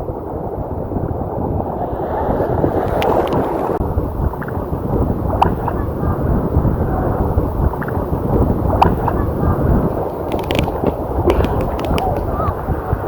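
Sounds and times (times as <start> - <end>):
ocean surf rushing: 0.0 - 13.0
wind buffeting microphone: 0.0 - 13.0
small splashy clicks: 2.8 - 3.5, 10.3 - 12.3.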